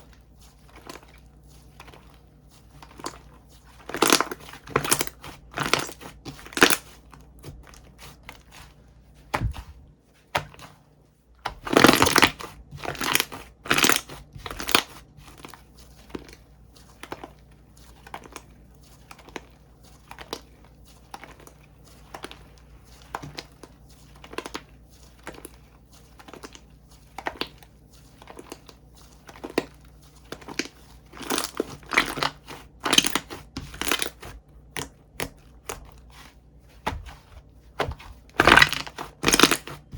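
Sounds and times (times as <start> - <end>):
slime squishing and popping: 3.8 - 7.0, 11.5 - 15.0, 30.3 - 35.9, 37.8 - 39.9.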